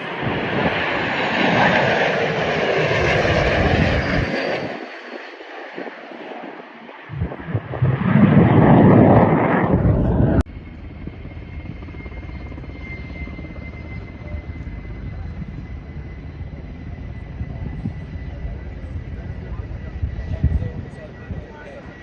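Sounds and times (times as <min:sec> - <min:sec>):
aircraft engine roar: 0:00.0 - 0:22.0
steady engine drone: 0:09.3 - 0:22.0.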